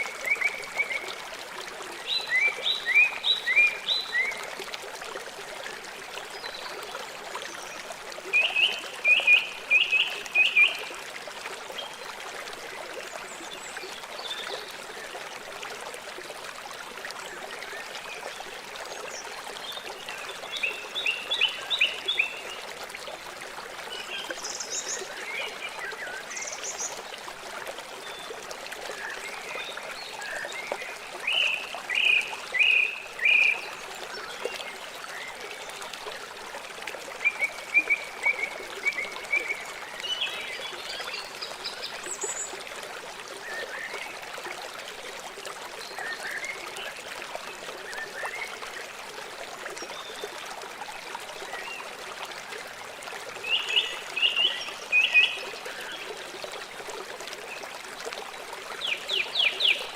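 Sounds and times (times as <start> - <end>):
river water flowing: 0.0 - 59.9.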